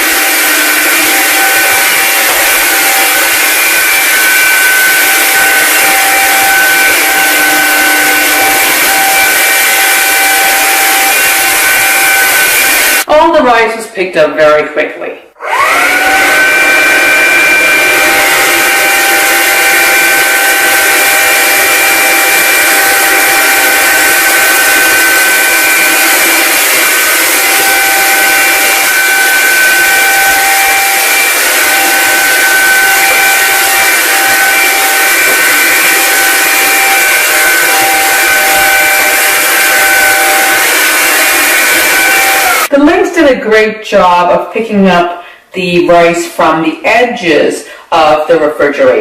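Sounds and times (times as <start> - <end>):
cordless vacuum running: 0.0 - 13.1, 15.4 - 42.8.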